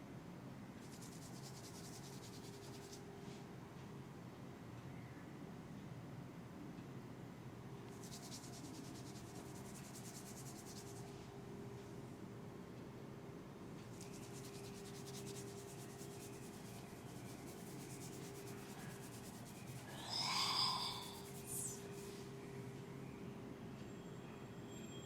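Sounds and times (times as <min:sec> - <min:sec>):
hands rubbing head: 0:13.9 - 0:22.1.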